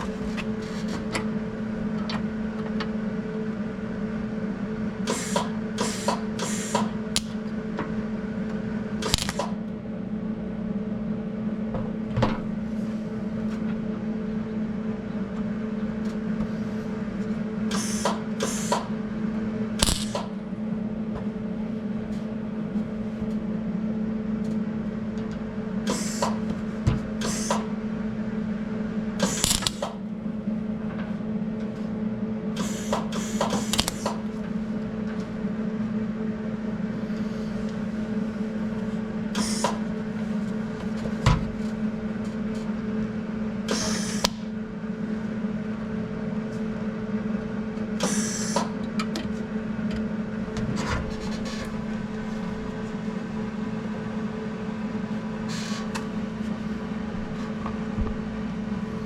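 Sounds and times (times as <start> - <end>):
welder electrical hum: 0.0 - 59.0
crackling welding arc bursts: 9.0 - 9.6, 19.8 - 20.3, 29.2 - 30.0, 32.6 - 34.1.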